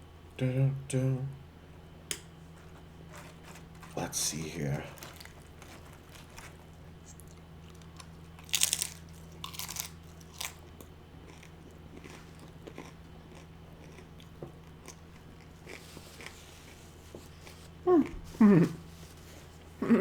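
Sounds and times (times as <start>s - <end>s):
tortilla chips crunching: 3.1s - 17.6s
chewing with small crackles: 4.9s - 18.4s.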